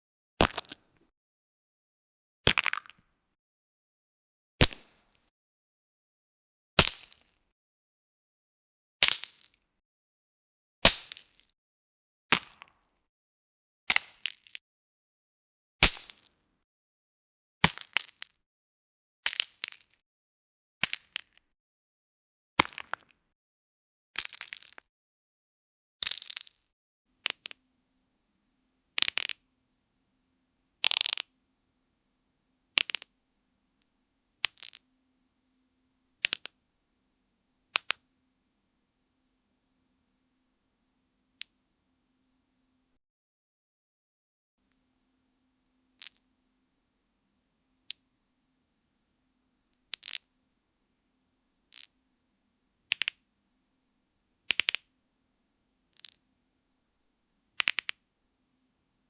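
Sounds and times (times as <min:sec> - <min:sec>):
knuckles cracking: 0:32.8 - 0:33.1, 0:36.2 - 0:36.6, 0:46.0 - 0:46.2, 0:49.8 - 0:50.3, 0:51.7 - 0:52.0, 0:52.9 - 0:53.2, 0:54.5 - 0:54.9, 0:55.9 - 0:56.2, 0:57.6 - 0:58.0.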